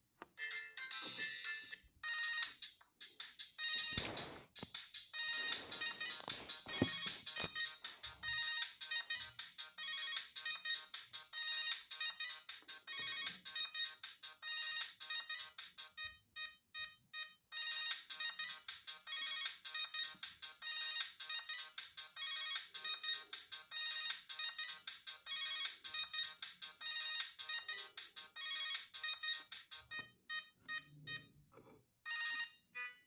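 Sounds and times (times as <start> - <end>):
phone ringtone melody: 0.4 - 2.7, 3.5 - 4.4, 5.2 - 31.3, 32.0 - 33.0.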